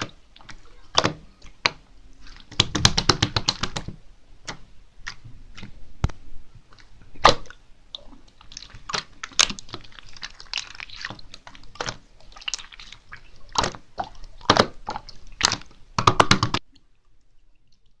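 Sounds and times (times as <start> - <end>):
slime squishing wet pops: 0.0 - 16.6.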